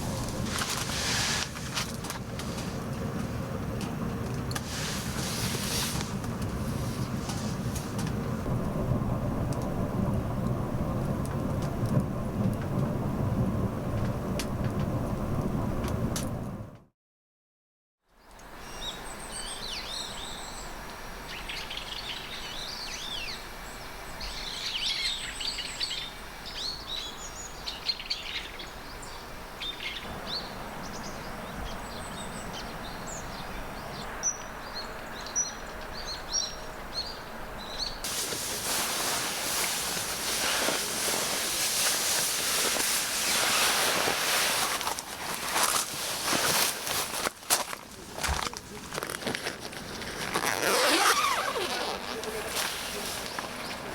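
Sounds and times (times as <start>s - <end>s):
small birds chirping: 18.2s - 42.0s
steady background hiss: 38.0s - 48.3s.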